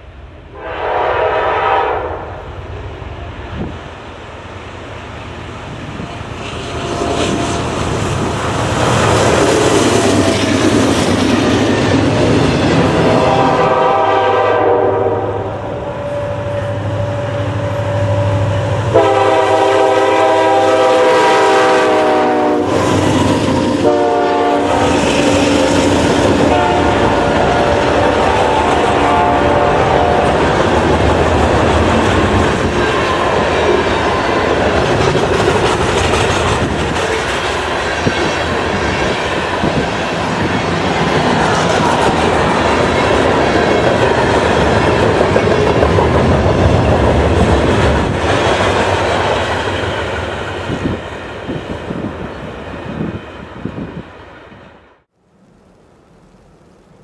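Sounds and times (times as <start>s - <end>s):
train wheels rumbling on rails: 0.0s - 54.6s
locomotive air horn blasts: 0.5s - 2.4s, 12.9s - 30.5s
locomotive engine drone: 15.1s - 20.4s.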